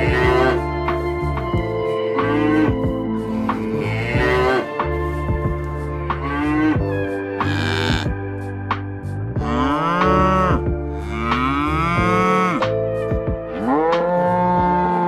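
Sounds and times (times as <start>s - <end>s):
cattle mooing: 0.0s - 0.7s, 2.2s - 5.1s, 6.1s - 8.2s, 9.4s - 12.7s, 13.5s - 15.0s.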